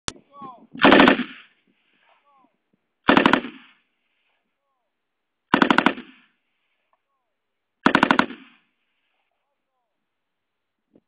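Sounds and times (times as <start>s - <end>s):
machine gun burst: 0.8s - 1.4s, 3.1s - 3.6s, 5.5s - 6.2s, 7.8s - 8.6s
gunfire echo: 0.8s - 1.6s, 3.0s - 3.8s, 5.5s - 6.4s, 7.8s - 8.7s.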